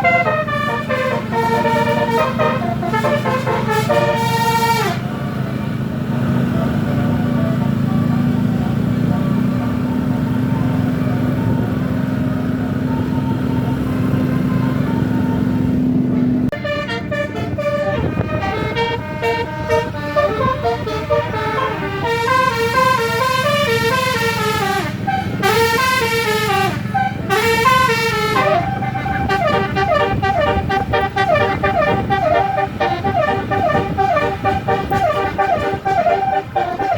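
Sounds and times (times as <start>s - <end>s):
bus horn playing melodic tunes: 0.0s - 36.9s
steady low drone: 14.6s - 36.9s.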